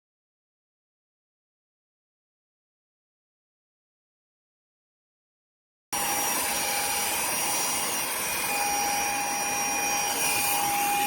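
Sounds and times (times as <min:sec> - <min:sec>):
handheld vacuum cleaner whine: 0:06.0 - 0:11.0.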